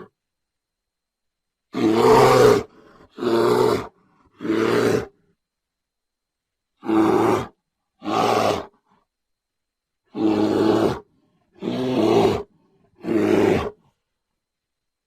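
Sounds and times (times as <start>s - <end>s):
bear roaring: 1.7s - 5.2s, 6.8s - 8.8s, 10.1s - 13.9s.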